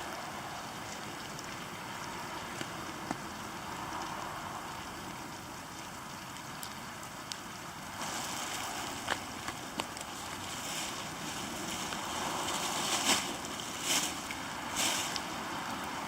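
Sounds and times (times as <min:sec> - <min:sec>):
sharp drip ticks: 0:00.0 - 0:10.8
rain pattering on plastic poncho: 0:00.0 - 0:16.0.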